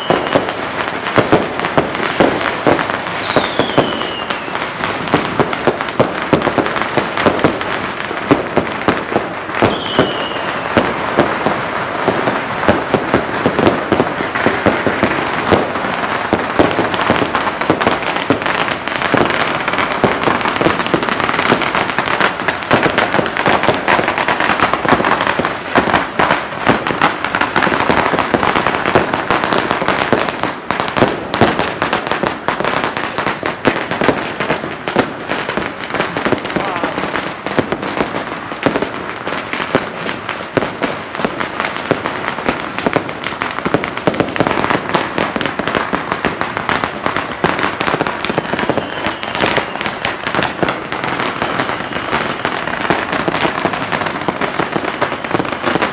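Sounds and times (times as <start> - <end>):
falling firework whistle: 0.0 - 1.3, 2.3 - 5.5, 9.5 - 12.4, 47.2 - 55.9
firecrackers crackling and banging: 0.0 - 55.9.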